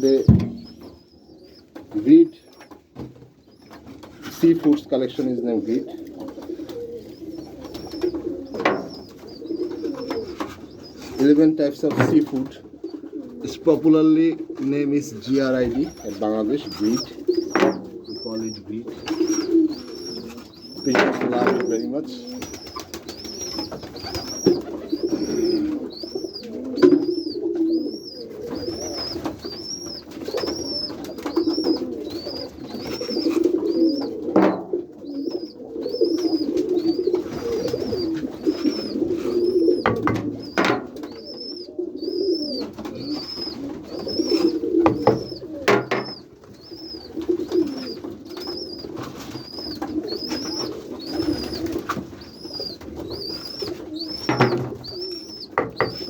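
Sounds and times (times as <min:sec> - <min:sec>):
pigeons cooing: 0:00.0 - 0:56.0
wing flutters and clicks: 0:19.0 - 0:27.2.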